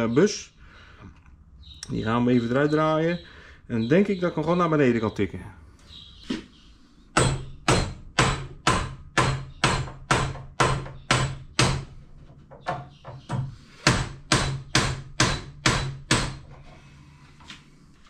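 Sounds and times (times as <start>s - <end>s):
hammer striking metal: 7.2s - 11.9s, 13.8s - 16.4s.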